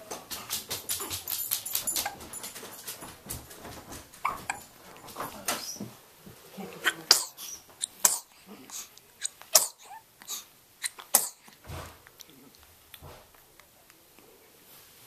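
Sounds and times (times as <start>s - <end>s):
small sharp sneezes: 6.8s - 11.6s.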